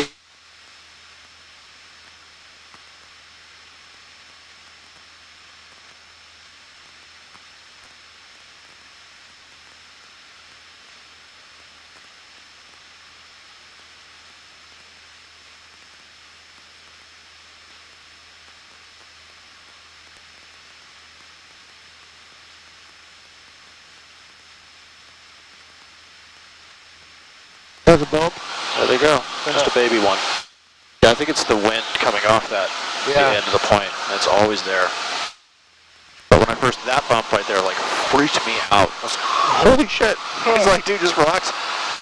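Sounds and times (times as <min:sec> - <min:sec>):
low steady hum: 0:00.0 - 0:41.8
steady hiss: 0:00.0 - 0:42.0
high-pitched whine: 0:27.9 - 0:35.4, 0:36.2 - 0:42.0.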